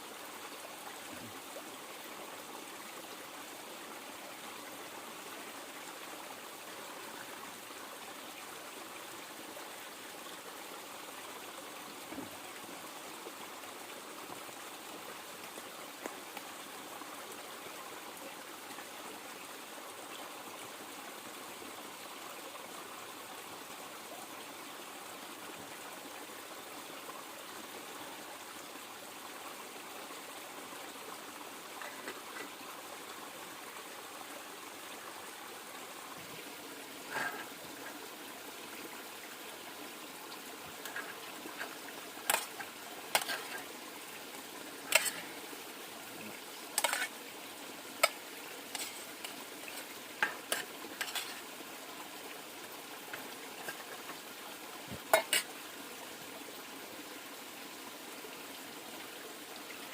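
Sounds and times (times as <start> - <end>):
river water running: 0.0 - 59.9
metal utensils clinking on pot: 40.8 - 43.7, 44.9 - 45.3, 46.8 - 47.1, 48.0 - 51.4, 55.1 - 55.5.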